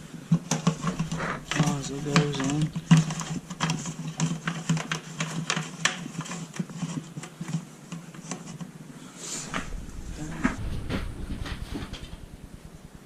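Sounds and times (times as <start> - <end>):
steady low hum: 0.0 - 4.2, 8.9 - 13.0.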